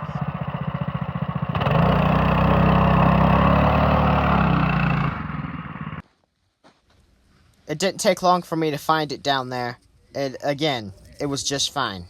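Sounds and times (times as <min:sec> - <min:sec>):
vehicle engine revving: 0:00.0 - 0:06.0.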